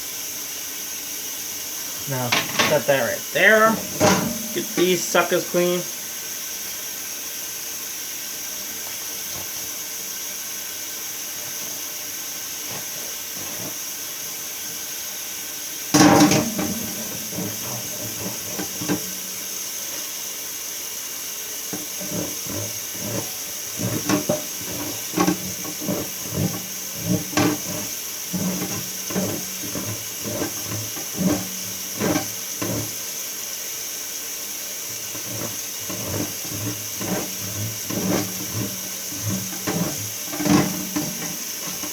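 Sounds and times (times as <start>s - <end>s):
steady hiss: 0.0s - 41.9s
parts knocking and clattering: 2.0s - 5.9s, 16.0s - 20.1s, 21.7s - 33.1s, 34.9s - 41.9s.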